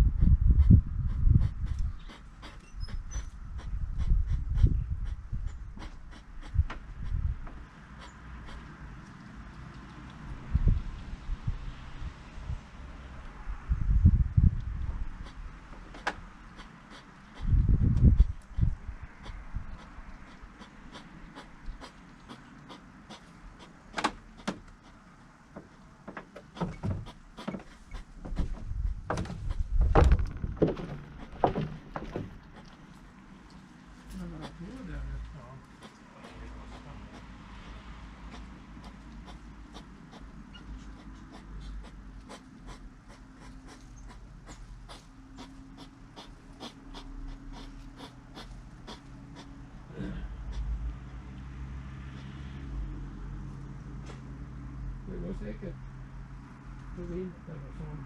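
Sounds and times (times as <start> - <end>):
low knocks: 25.6 - 32.4.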